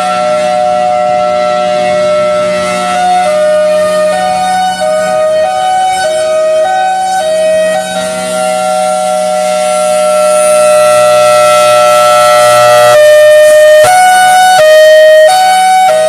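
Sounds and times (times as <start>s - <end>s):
hi-lo warning siren: 0.0s - 16.0s.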